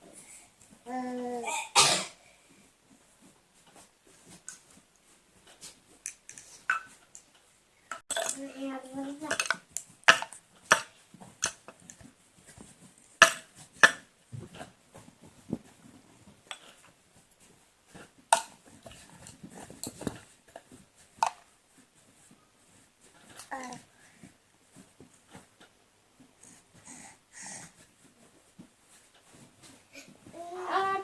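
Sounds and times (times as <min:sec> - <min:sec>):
hard objects knocking and clacking: 0:07.9 - 0:12.1, 0:13.2 - 0:14.6.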